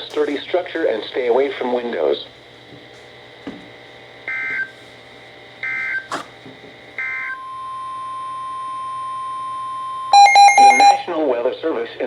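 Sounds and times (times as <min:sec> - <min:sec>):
digital data tone bursts: 0:10.2 - 0:11.1.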